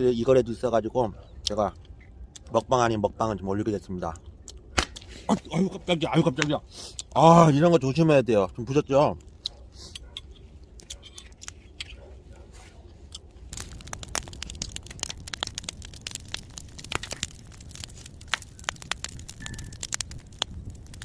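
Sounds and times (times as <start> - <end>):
wood fire crackling: 12.8 - 21.0.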